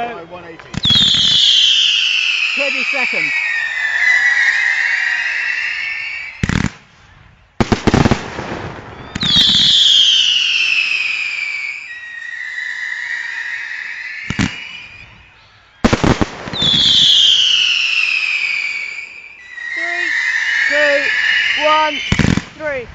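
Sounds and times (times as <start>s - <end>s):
fireworks bangs: 0.0s - 22.9s
fireworks whistles: 0.7s - 22.9s.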